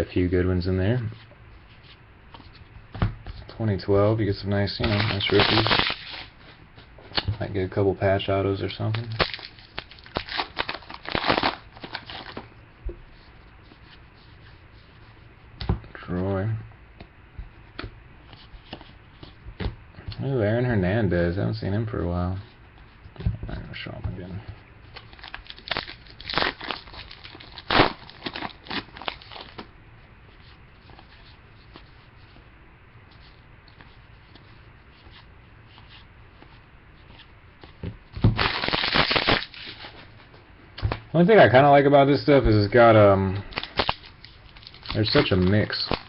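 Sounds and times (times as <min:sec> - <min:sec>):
cards rustling: 0:04.7 - 0:06.4, 0:08.8 - 0:12.5, 0:38.4 - 0:40.1, 0:42.5 - 0:46.0
card pack wrapper crinkling: 0:04.8 - 0:06.3, 0:08.9 - 0:12.4, 0:25.0 - 0:29.6, 0:38.3 - 0:40.0, 0:43.5 - 0:46.0
sharp crackles: 0:38.3 - 0:39.8.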